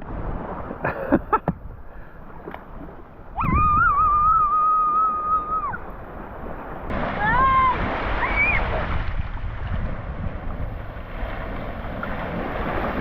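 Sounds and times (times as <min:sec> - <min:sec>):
child yelling high-pitched: 0:07.2 - 0:08.6.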